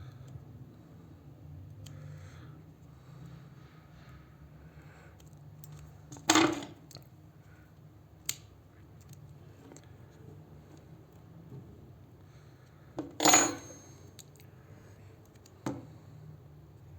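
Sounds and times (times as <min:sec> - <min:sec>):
tools clattering: 0:13.0 - 0:14.2.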